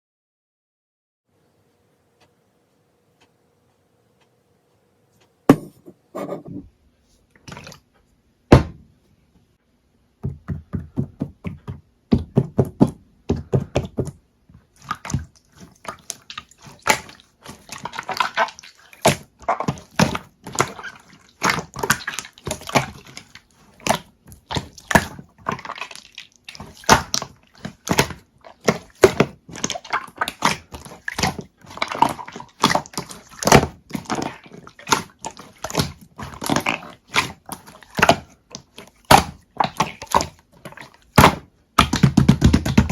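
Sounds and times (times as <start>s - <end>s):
slime squished by hand: 12.2s - 42.9s.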